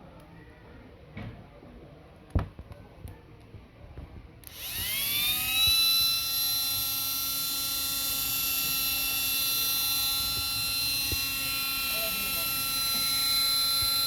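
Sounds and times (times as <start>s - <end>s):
electric motor whining: 4.4s - 14.0s.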